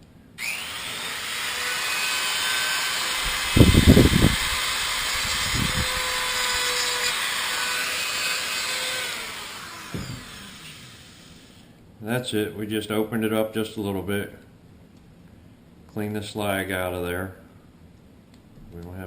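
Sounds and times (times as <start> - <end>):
rotary tool drilling at high speed: 0.4 - 11.6.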